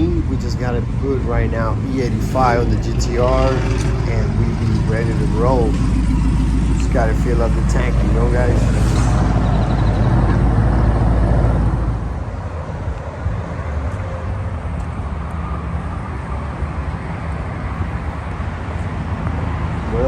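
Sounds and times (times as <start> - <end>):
car engine running: 0.0 - 12.6
road rumble: 0.0 - 20.0.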